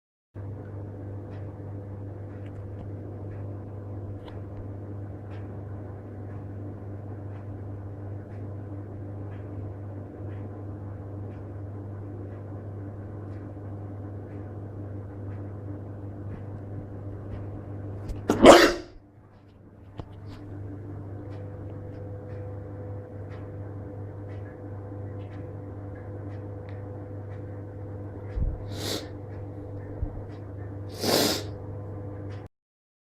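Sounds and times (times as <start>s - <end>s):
low background hum: 0.4s - 32.5s.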